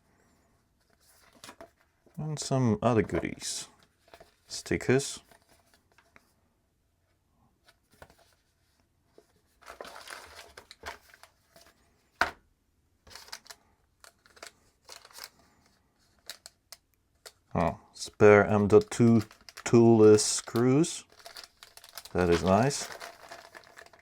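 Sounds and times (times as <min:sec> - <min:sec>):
plastic bags crinkling: 0:13.1 - 0:15.4, 0:18.6 - 0:24.0.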